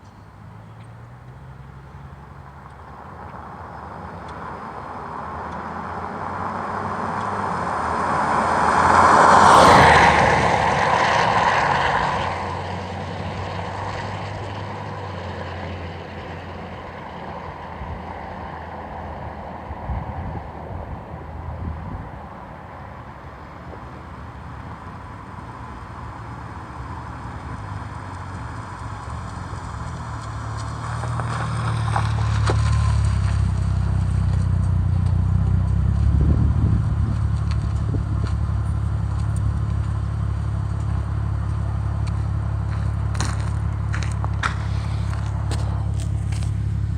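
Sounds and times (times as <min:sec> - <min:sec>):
car engine running steadily: 0:10.4 - 0:46.9.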